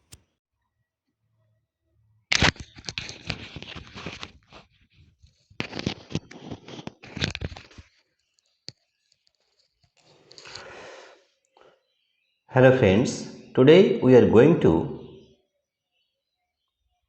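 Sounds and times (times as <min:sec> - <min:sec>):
crackling rustling handling noise: 0:02.3 - 0:10.6.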